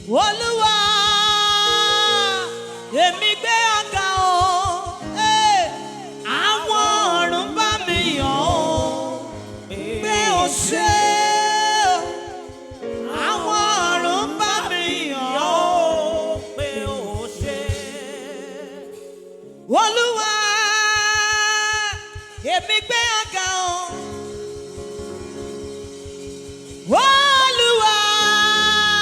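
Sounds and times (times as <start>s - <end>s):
gospel singing vocal runs: 0.0s - 29.0s
sustained backing chords: 0.0s - 29.0s
steady low beat: 2.2s - 18.0s, 20.9s - 28.0s.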